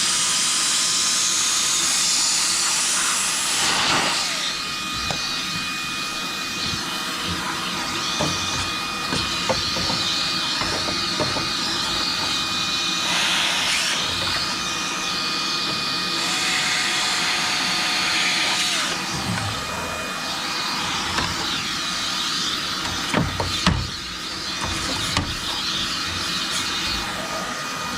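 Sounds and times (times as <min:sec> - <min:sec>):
motor whine: 0:01.6 - 0:27.9.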